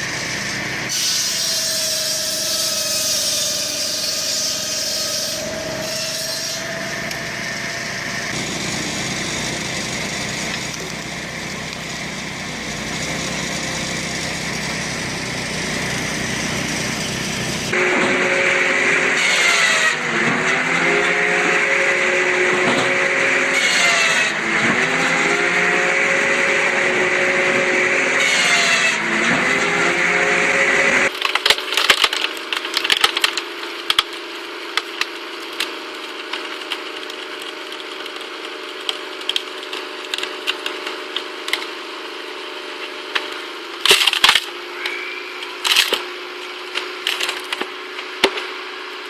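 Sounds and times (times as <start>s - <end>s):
machine engine running loud: 0.0s - 0.9s, 3.3s - 31.1s
log splitter hum: 0.0s - 49.0s
wood cracking and snapping: 31.1s - 41.8s, 43.1s - 48.5s.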